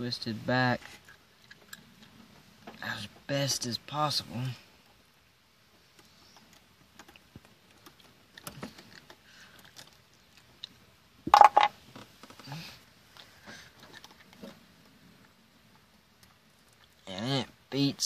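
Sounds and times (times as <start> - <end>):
wire strands clicking and rattling: 5.8 - 12.4
handling noise: 11.3 - 12.4.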